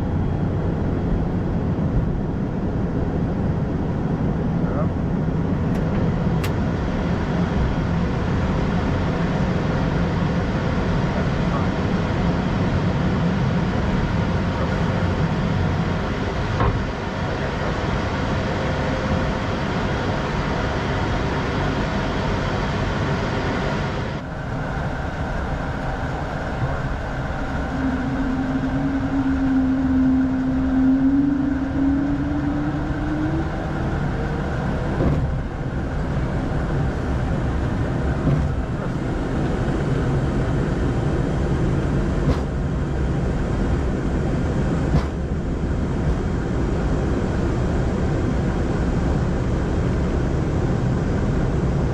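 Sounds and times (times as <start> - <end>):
jet engines humming: 0.0 - 51.9
rushing air in cockpit: 0.0 - 51.9
low hum rising in pitch: 12.8 - 51.9.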